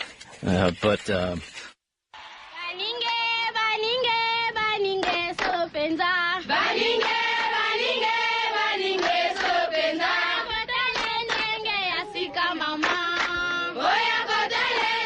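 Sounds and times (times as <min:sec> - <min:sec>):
group chanting and singing: 0:05.1 - 0:15.0.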